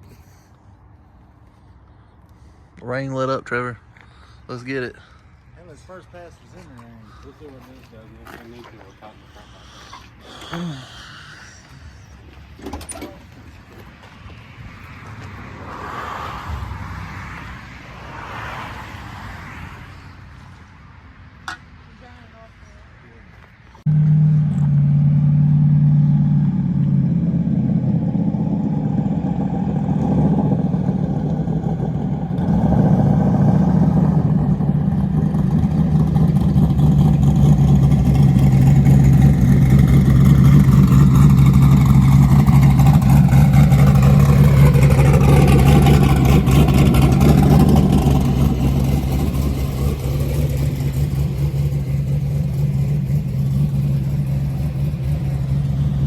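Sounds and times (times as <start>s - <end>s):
drag car engine running: 23.9s - 56.0s.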